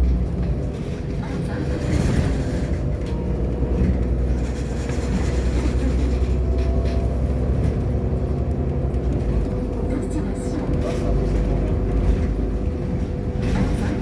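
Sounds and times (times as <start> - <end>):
bus engine drone: 0.0 - 14.0.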